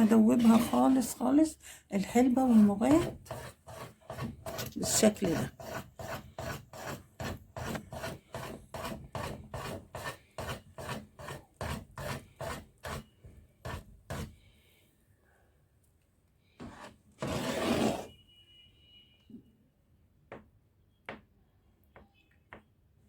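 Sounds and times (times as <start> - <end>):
spoon scraping a pot: 0.0 - 14.3.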